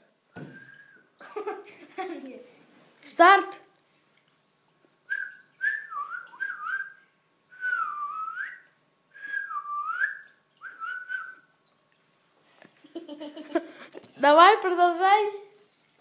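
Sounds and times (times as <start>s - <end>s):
person whistling: 0.4s - 1.0s, 5.1s - 7.0s, 7.6s - 8.6s, 9.2s - 11.4s.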